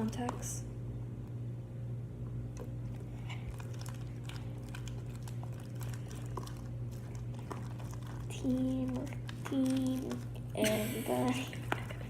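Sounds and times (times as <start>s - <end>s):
steady low hum: 0.0s - 12.0s
slime squishing: 2.5s - 12.0s.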